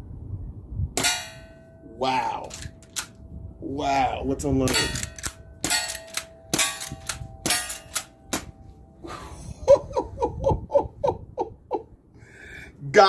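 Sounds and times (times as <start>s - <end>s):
air rifle shots: 1.0s - 1.6s, 4.7s - 8.6s
man laughing: 9.0s - 12.0s.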